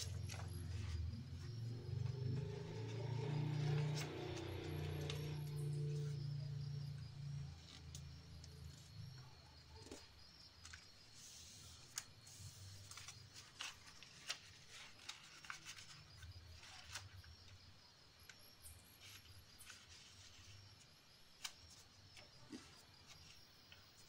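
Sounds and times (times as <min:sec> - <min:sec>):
paper being folded and creased: 0:00.0 - 0:06.1, 0:09.7 - 0:17.3, 0:19.0 - 0:23.4.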